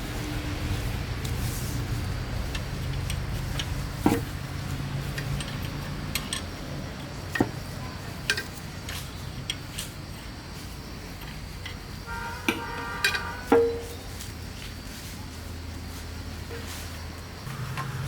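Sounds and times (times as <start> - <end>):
metal tools clinking: 5.0 - 7.5.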